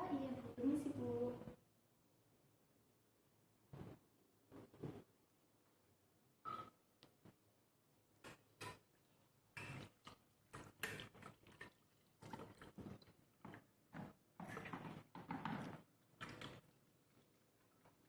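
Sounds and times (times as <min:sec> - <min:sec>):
hands washing under water: 0:08.2 - 0:18.0.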